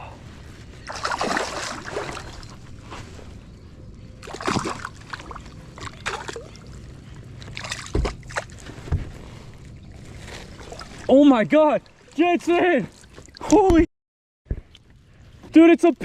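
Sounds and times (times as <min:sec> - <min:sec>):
water splashing beside kayak: 0:00.8 - 0:02.6, 0:04.2 - 0:08.6.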